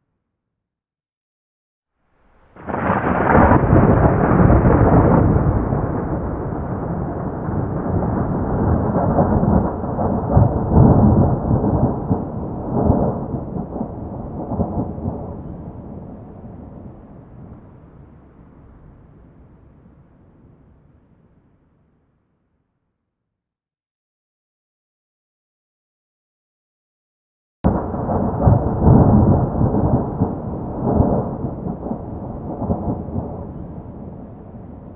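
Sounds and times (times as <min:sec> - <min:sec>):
rolling thunder: 0:02.2 - 0:20.8, 0:27.7 - 0:34.9.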